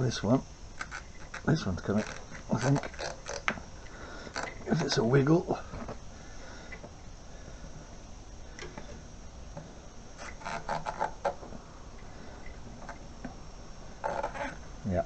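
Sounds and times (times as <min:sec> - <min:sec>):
hands working a rubber hose: 0:00.8 - 0:03.6.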